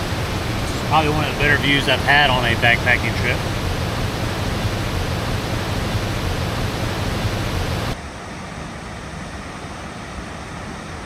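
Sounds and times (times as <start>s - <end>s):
dull steady hiss: 0.0s - 8.0s
waterfall rushing: 0.0s - 8.0s.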